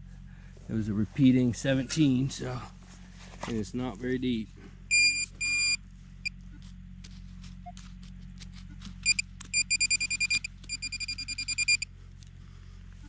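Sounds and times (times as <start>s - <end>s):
metal detector beeping: 4.9s - 5.8s, 9.0s - 11.9s.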